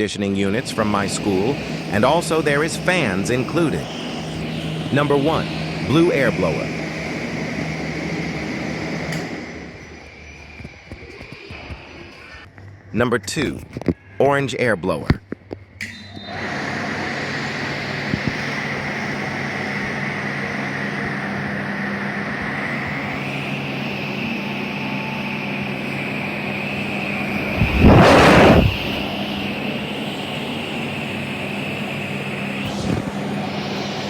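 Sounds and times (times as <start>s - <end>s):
electric air blower whine: 0.0s - 12.5s, 15.9s - 34.0s
rush of noise: 16.4s - 34.0s.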